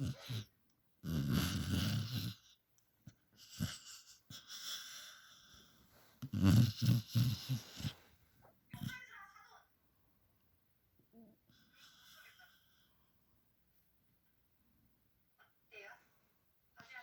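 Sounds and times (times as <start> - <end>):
puppy snoring: 0.0 - 2.6, 3.3 - 8.1
wheezy breaths: 3.4 - 8.2.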